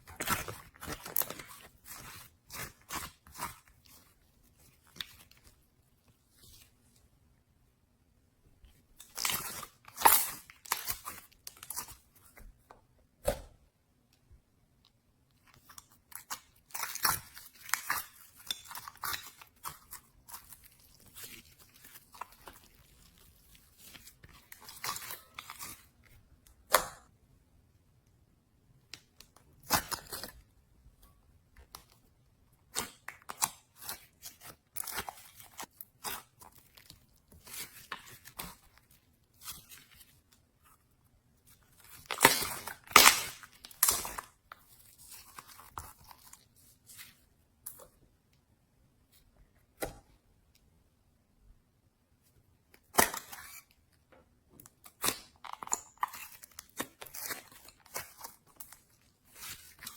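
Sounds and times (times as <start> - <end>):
slime squishing and crackling: 0.0 - 5.6, 15.6 - 25.9, 41.5 - 46.6, 54.8 - 59.9.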